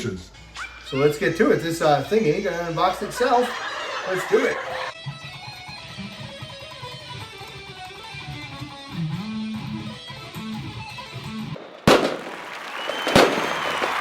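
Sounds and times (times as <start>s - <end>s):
guitar music with bass line: 4.9s - 11.6s.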